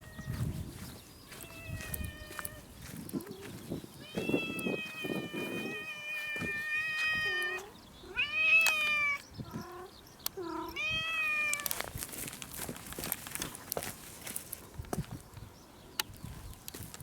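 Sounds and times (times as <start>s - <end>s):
cat meowing: 1.4s - 2.7s, 4.0s - 11.7s.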